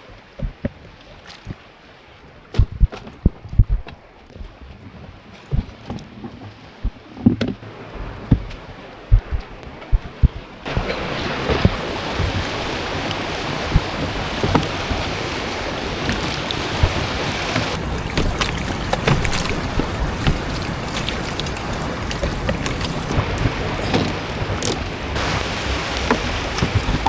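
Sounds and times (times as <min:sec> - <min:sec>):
sea waves in a storm: 0:10.7 - 0:27.0
knocks and splashes: 0:17.6 - 0:23.2.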